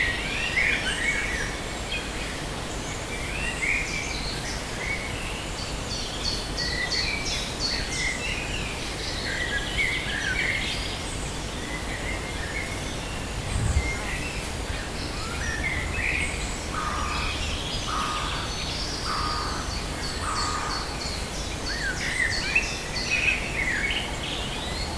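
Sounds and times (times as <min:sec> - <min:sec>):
forest birds singing: 0:03.4 - 0:24.9
low background rumble: 0:12.9 - 0:15.5
low thump: 0:13.4 - 0:14.3.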